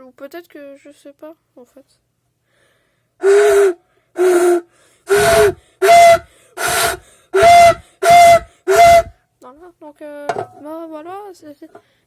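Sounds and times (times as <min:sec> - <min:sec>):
blowing into soda can: 0:03.2 - 0:09.1.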